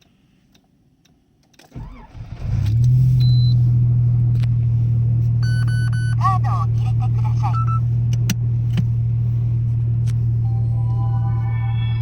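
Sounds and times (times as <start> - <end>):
car engine cranking and idling: 0.6 - 12.0
electronic beeps: 10.4 - 12.0.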